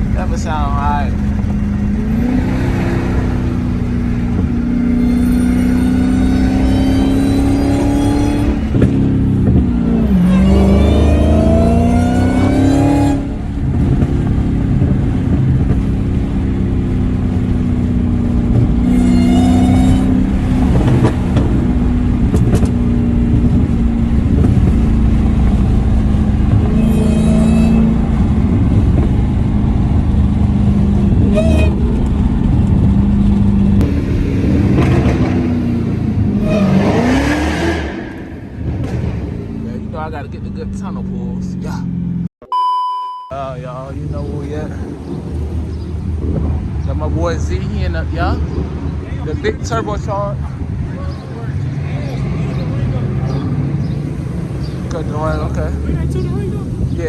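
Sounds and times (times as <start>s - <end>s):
supercharger whine: 0.0s - 41.8s
car engine accelerating hard: 0.0s - 42.3s, 43.5s - 57.0s.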